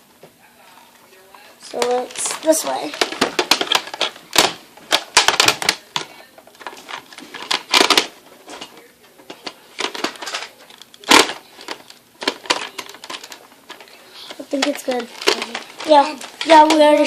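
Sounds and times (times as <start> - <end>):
plastic clicks and knocks: 2.9 - 13.9, 14.6 - 15.6.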